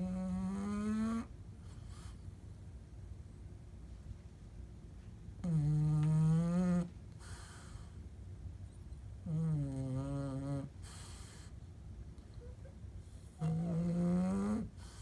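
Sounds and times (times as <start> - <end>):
dog snoring: 0.0 - 2.2, 5.4 - 8.0, 9.2 - 11.6, 13.0 - 15.0
breathy hiss: 7.1 - 8.0, 10.6 - 11.6, 14.6 - 15.0.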